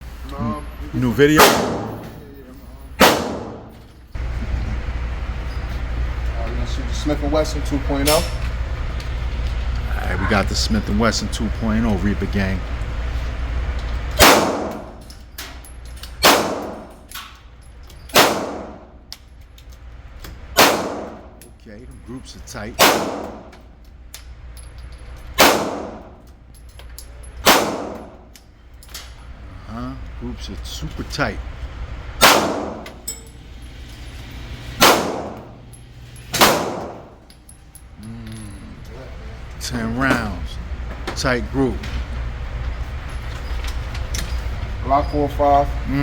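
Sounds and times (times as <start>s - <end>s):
pistol shots echoing: 1.4s - 2.1s, 3.0s - 3.8s, 14.2s - 15.0s, 16.2s - 16.9s, 18.1s - 18.9s, 20.6s - 21.4s, 22.8s - 23.5s, 25.4s - 26.2s, 27.4s - 28.2s, 32.2s - 33.0s, 34.8s - 35.6s, 36.4s - 37.2s.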